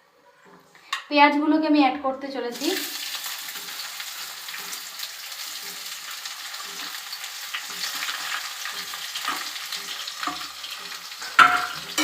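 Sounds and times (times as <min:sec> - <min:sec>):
onions sizzling in hot oil: 0:02.5 - 0:12.0
spatula stirring in pan: 0:03.0 - 0:12.0.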